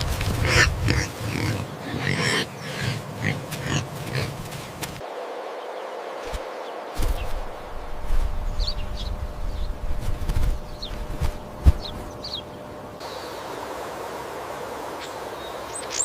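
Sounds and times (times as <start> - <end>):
young animal squealing and grunting: 0.3 - 4.6
quiet hiss: 2.2 - 16.0.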